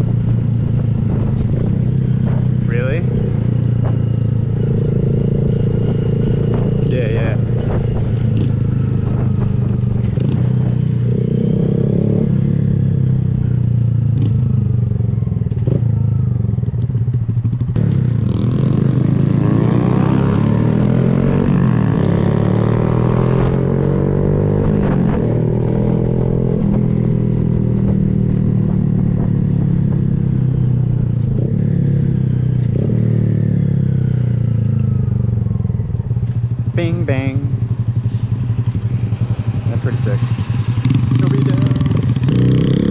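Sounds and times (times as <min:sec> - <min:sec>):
wind rushing on microphone: 0:00.0 - 0:13.7, 0:19.1 - 0:31.6
motorcycle engine revving: 0:00.0 - 0:42.9.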